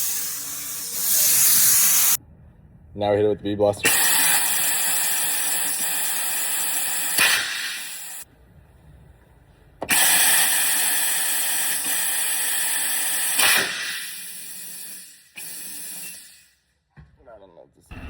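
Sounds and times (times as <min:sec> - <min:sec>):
compressed air blast: 0:00.0 - 0:02.2, 0:07.1 - 0:08.1, 0:09.9 - 0:11.0
loud hissing of air: 0:00.0 - 0:02.2.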